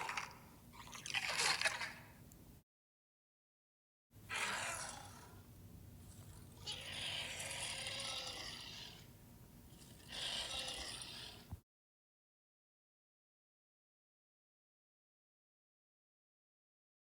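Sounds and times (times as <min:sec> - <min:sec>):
creature hissing rasping calls: 0:04.3 - 0:05.4, 0:06.6 - 0:09.1, 0:09.8 - 0:11.5.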